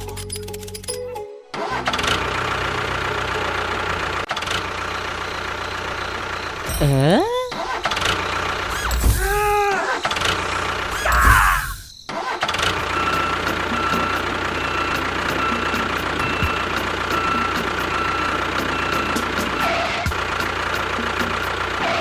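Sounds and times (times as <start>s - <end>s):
engine running with faint whine: 1.8s - 6.8s, 12.8s - 22.0s.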